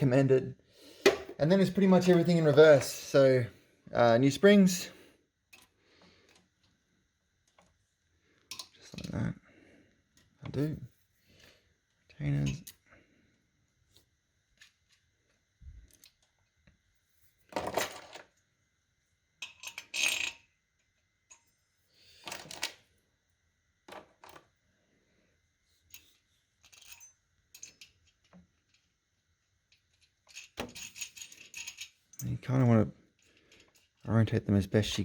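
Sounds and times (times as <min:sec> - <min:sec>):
metallic clinks of small steel parts: 0:25.9 - 0:28.8, 0:29.9 - 0:32.6.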